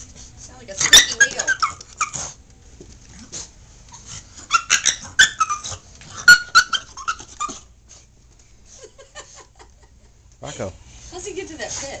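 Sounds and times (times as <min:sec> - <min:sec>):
dog whining: 0:00.8 - 0:02.4, 0:03.9 - 0:07.7.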